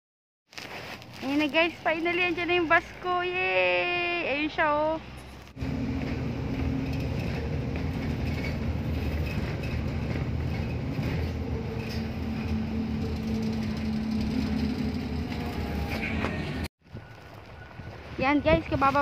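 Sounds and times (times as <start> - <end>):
bus engine droning: 2.0 - 16.7.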